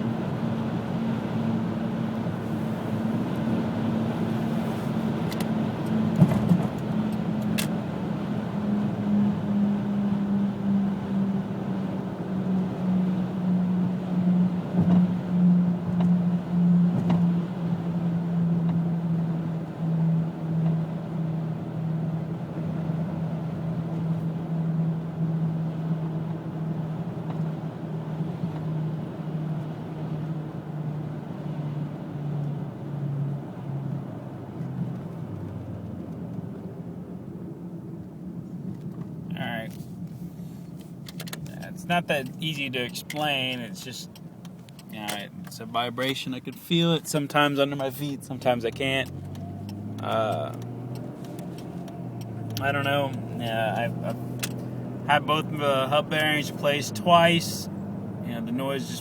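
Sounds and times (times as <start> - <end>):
car humming while driving: 0.0 - 59.0
road noise: 0.0 - 59.0.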